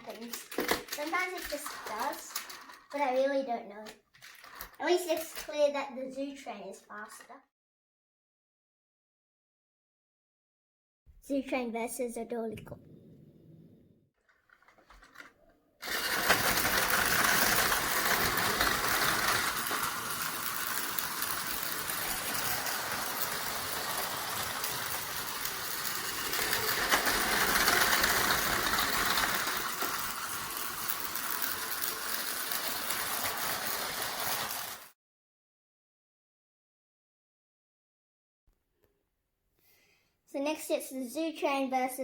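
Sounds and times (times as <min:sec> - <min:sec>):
wheels rattling over track joints: 0:00.0 - 0:05.6, 0:14.5 - 0:34.9
toy train motors whirring: 0:00.0 - 0:07.3, 0:14.6 - 0:35.0.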